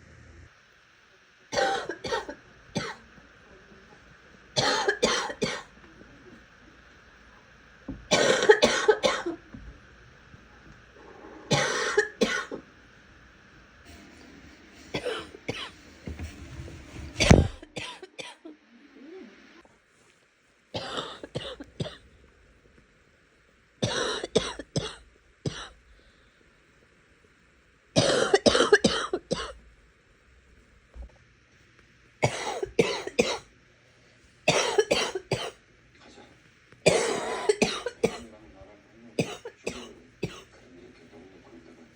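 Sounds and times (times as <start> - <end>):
person coughing wetly: 1.5 - 3.0, 4.6 - 5.7, 8.1 - 9.4, 11.5 - 12.6, 14.9 - 15.7, 20.8 - 22.0, 23.8 - 25.7, 28.0 - 29.6, 32.2 - 33.5, 34.5 - 35.6, 36.8 - 38.2, 39.2 - 40.5.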